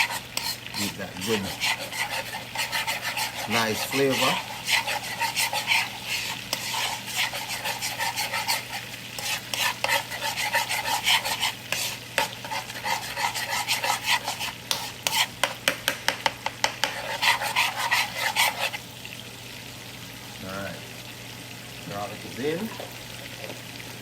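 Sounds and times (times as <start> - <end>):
utensil scraping a pan: 0.0 - 18.8
garlic sizzling in butter: 0.0 - 24.0.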